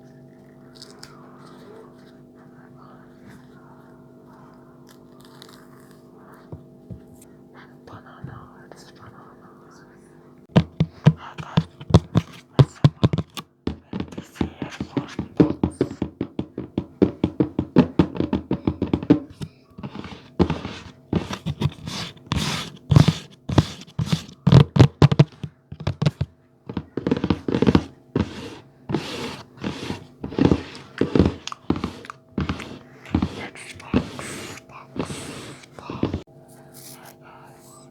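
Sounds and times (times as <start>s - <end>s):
tapping and thudding on objects: 10.5s - 36.2s.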